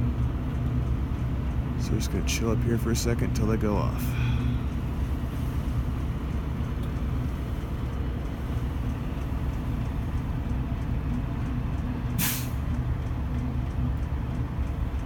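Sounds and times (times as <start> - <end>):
low mechanical rumble: 0.0 - 15.0
sharp hiss of air: 12.2 - 12.6.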